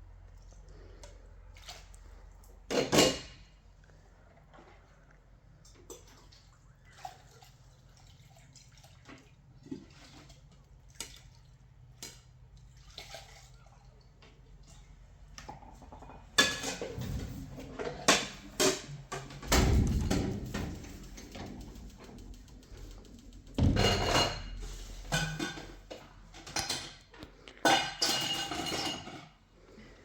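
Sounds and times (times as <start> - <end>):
clattering: 16.4 - 27.0.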